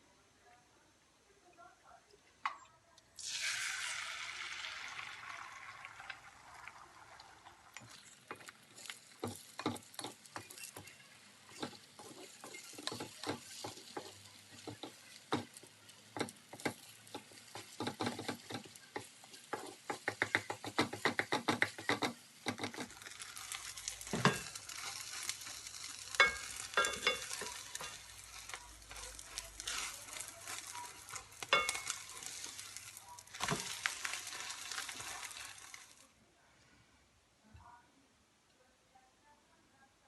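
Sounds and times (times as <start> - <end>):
food sizzling in a pan: 3.2 - 36.2
utensil tapping and scraping a pan: 7.7 - 36.0.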